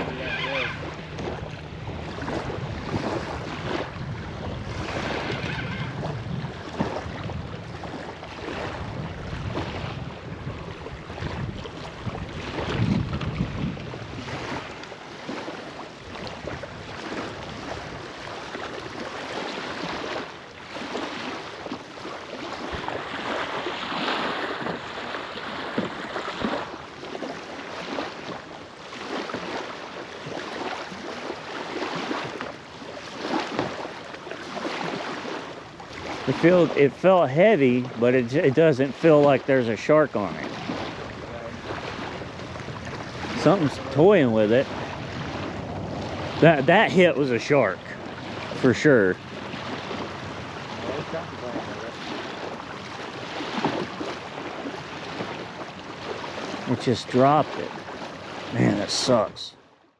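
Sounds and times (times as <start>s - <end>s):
wind buffeting microphone: 0.0s - 20.2s, 40.3s - 47.2s, 48.0s - 56.7s
water lapping at shore: 0.0s - 59.9s.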